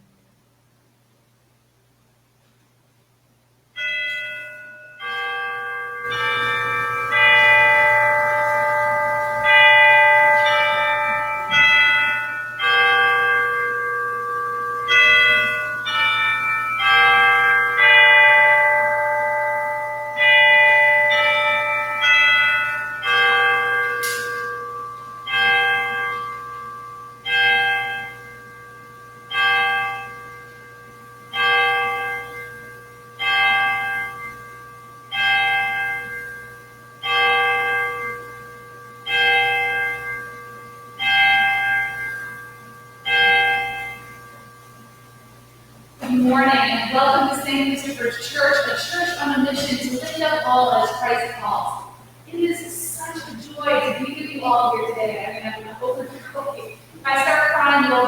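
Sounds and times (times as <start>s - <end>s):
church bells ringing a tune: 3.8s - 58.0s
single bell tolling: 6.0s - 26.4s.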